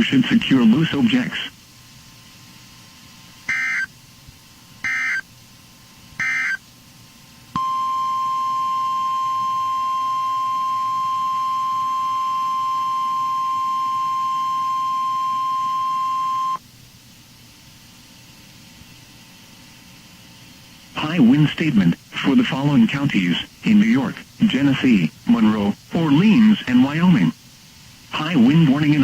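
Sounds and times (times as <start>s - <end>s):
buzzy digital data bursts: 3.4s - 3.9s, 4.8s - 5.3s, 6.2s - 6.7s
steady warning alarm tone: 3.5s - 3.9s, 4.8s - 5.2s, 6.2s - 6.6s, 7.6s - 16.6s.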